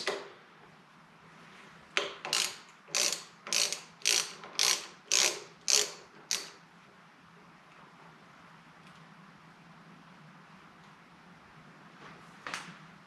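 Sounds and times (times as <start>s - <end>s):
ratchet wrench clicking: 2.3s - 6.6s.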